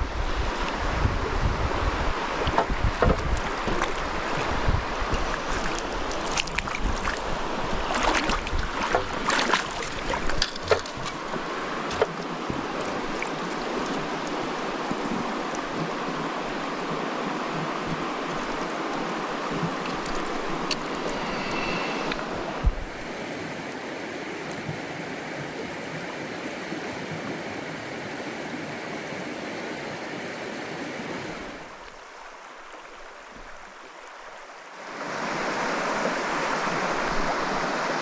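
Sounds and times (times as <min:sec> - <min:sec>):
wind buffeting microphone: 0:00.0 - 0:11.1, 0:21.4 - 0:31.6
moving water: 0:00.0 - 0:38.0.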